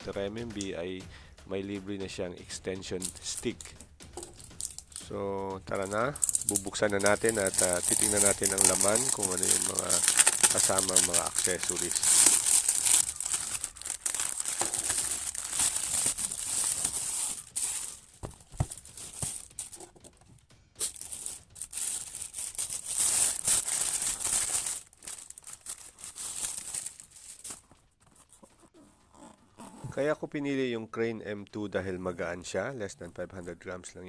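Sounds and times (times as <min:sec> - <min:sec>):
packaging crinkling and tearing: 0:05.7 - 0:19.9, 0:20.8 - 0:27.8.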